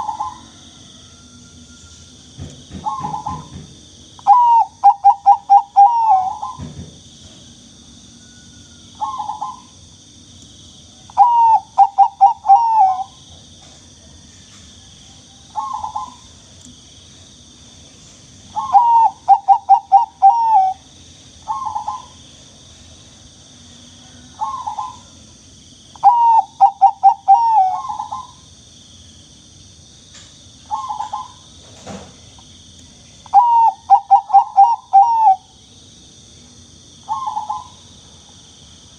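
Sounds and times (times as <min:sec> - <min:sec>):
dove cooing: 0:00.0 - 0:00.8, 0:02.8 - 0:03.6, 0:04.2 - 0:06.8, 0:09.0 - 0:09.7, 0:11.1 - 0:13.2, 0:15.5 - 0:16.2, 0:18.5 - 0:20.8, 0:21.4 - 0:22.2, 0:24.4 - 0:25.2, 0:26.0 - 0:28.4, 0:30.7 - 0:31.4, 0:33.3 - 0:35.5, 0:37.1 - 0:37.8.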